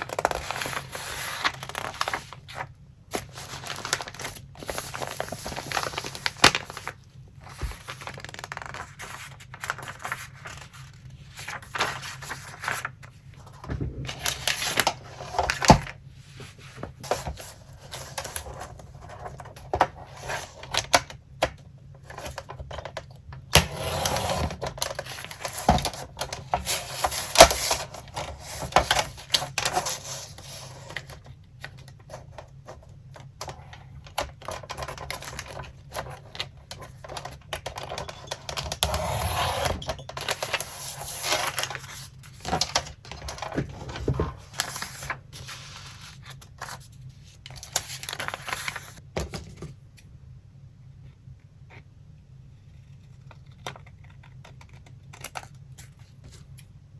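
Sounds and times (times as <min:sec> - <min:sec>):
paper sheets rustling: 0:00.0 - 0:20.5, 0:34.5 - 0:49.0.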